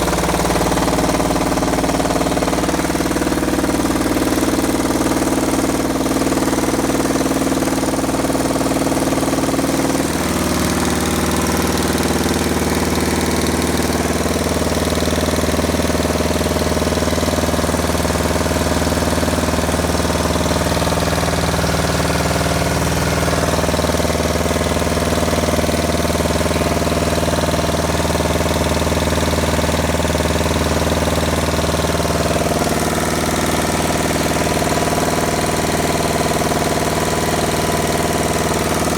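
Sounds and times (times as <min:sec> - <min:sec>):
washing machine droning: 0:00.0 - 0:38.9.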